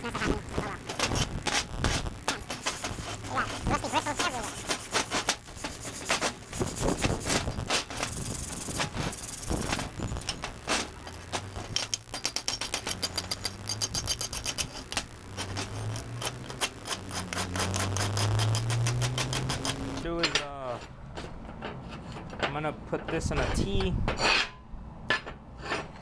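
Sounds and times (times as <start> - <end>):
rapid scraping of steel plates: 0.4 - 20.1.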